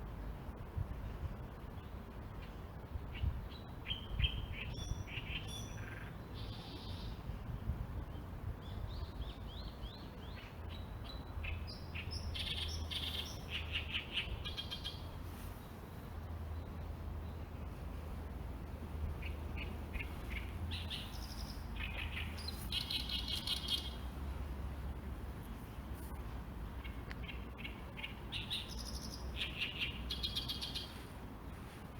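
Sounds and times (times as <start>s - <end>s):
low steady rumble: 0.0s - 31.9s
small birds chirping: 8.1s - 15.8s, 19.0s - 24.1s, 26.7s - 31.8s.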